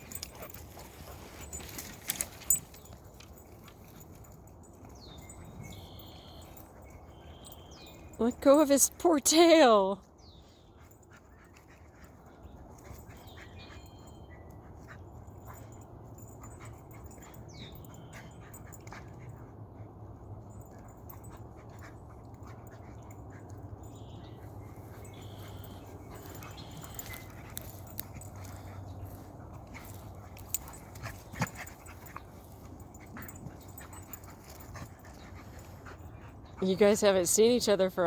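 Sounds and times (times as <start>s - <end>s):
dogs scuffling: 0.0s - 5.4s.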